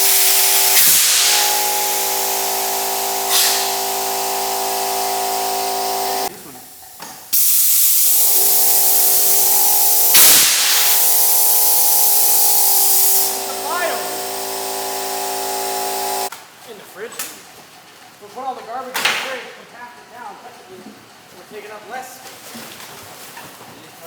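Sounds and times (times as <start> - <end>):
droning motor hum: 0.0 - 6.3, 8.0 - 16.3
air compressor hissing: 0.0 - 16.3.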